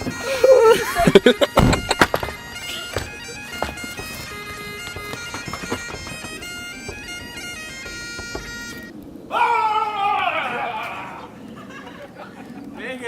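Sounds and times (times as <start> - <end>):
reedy melody: 0.0 - 9.3.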